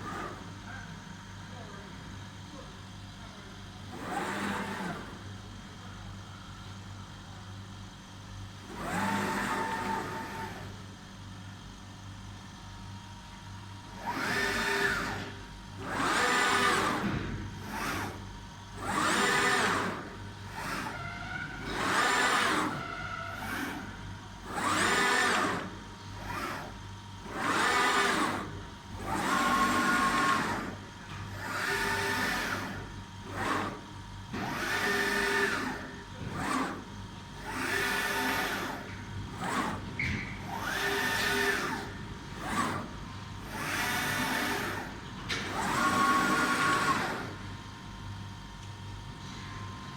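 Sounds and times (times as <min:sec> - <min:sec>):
cutting machine motors whining: 0:03.9 - 0:05.4, 0:08.6 - 0:11.0, 0:13.9 - 0:48.4.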